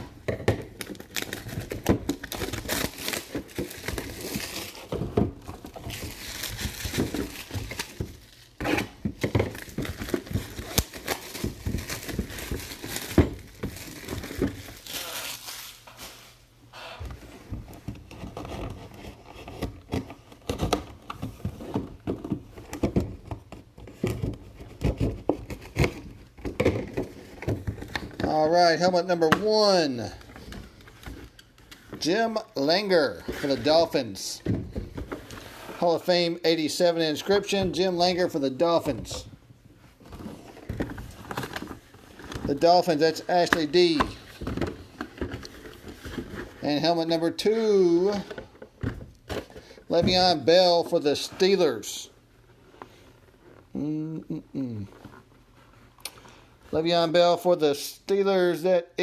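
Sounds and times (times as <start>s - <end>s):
packaging tearing and crinkling: 0.7s - 16.4s.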